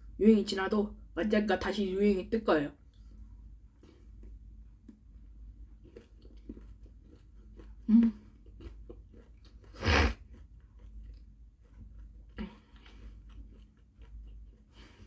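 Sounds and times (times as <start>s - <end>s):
person chewing chocolate: 2.8s - 15.0s
breathy noise burst: 9.8s - 10.2s.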